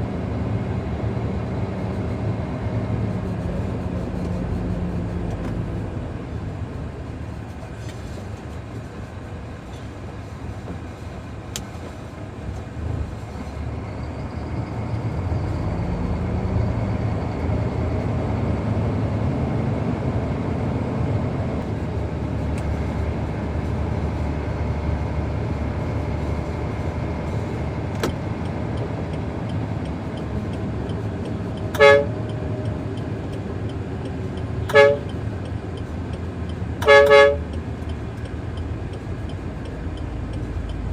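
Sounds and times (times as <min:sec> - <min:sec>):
diesel engine running: 0:00.0 - 0:40.9
horn toots: 0:31.7 - 0:32.2, 0:34.6 - 0:35.1, 0:36.8 - 0:37.5.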